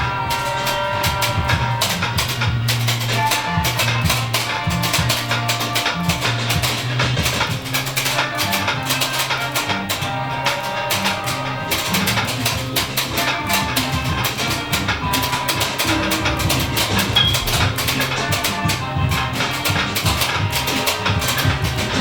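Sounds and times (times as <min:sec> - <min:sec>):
guitar music with bass and percussion: 0:00.0 - 0:22.0.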